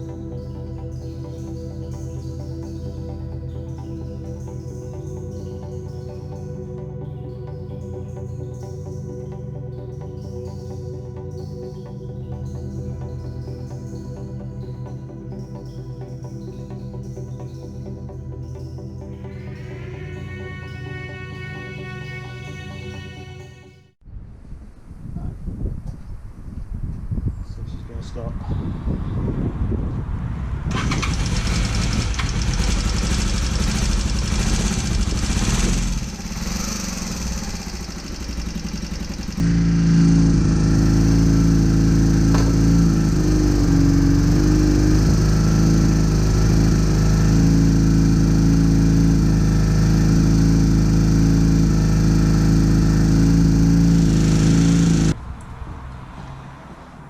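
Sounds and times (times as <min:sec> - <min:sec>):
motor humming: 0:32.0 - 0:55.2.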